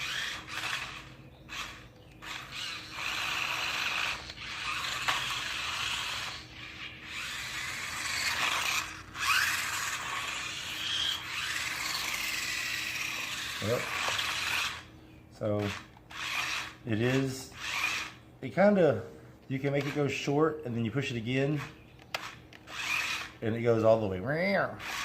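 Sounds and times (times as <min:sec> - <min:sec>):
toy car motors whirring: 0:00.0 - 0:18.2, 0:19.5 - 0:24.0, 0:24.6 - 0:25.0.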